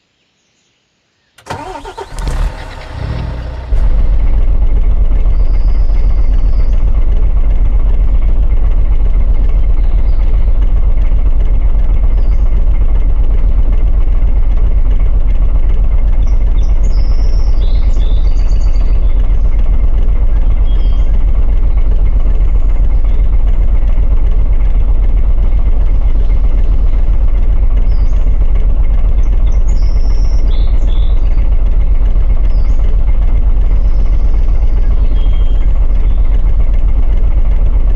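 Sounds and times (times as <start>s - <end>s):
diesel engine cranking and idling: 1.4s - 37.9s.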